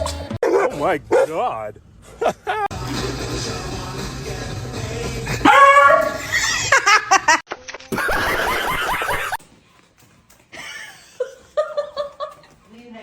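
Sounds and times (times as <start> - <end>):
people laughing: 2.2 - 2.7, 6.2 - 9.4.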